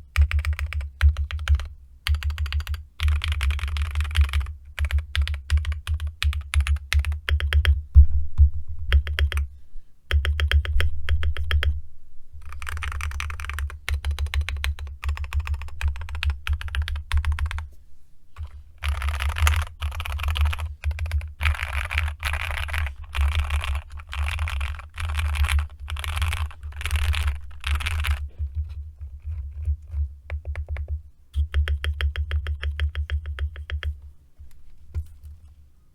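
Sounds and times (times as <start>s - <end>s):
mechanical keyboard typing: 0.0s - 7.8s, 8.9s - 9.5s, 10.1s - 11.7s, 12.5s - 17.7s, 18.4s - 28.3s, 29.2s - 34.0s.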